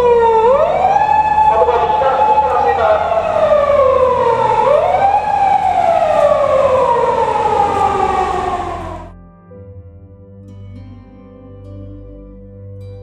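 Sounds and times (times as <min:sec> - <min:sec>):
police siren wailing: 0:00.0 - 0:09.2.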